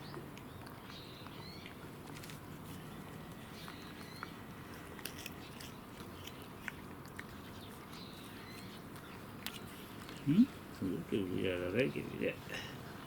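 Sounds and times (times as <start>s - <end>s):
cat chewing and biting: 1.6s - 10.3s.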